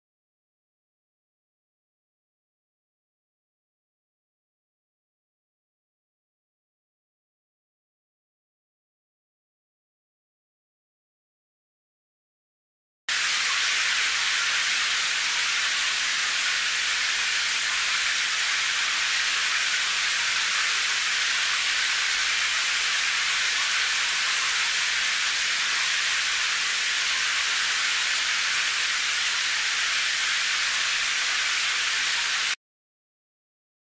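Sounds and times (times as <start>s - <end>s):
rain hiss: 13.1s - 32.6s.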